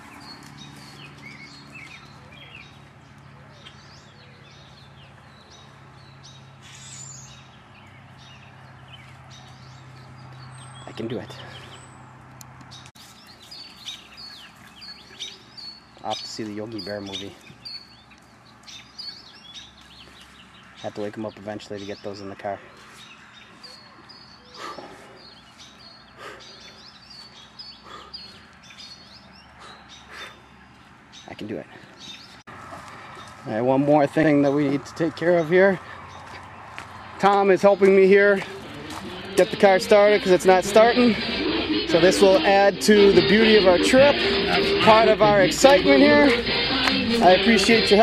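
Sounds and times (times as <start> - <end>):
birds chirping: 0.0 - 48.0
steady low hum: 38.1 - 48.0.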